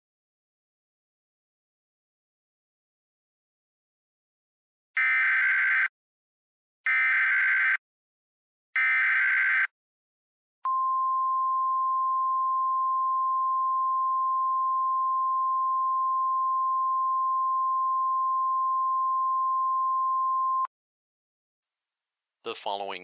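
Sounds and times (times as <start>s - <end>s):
emergency alert sine tone: 10.7s - 20.7s.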